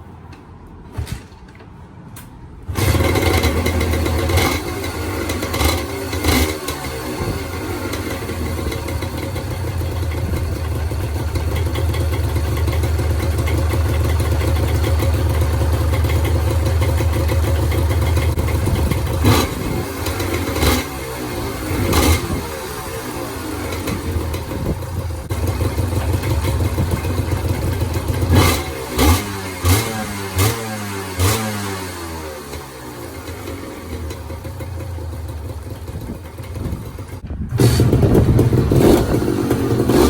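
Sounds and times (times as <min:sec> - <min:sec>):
motorcycle engine starting and idling: 0:00.4 - 0:40.0.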